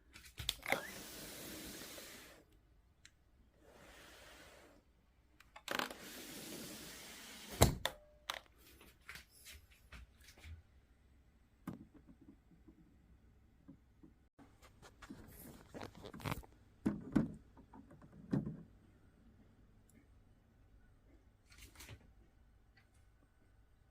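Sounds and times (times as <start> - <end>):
harsh scraping hiss: 0.8 - 2.5, 3.6 - 4.8.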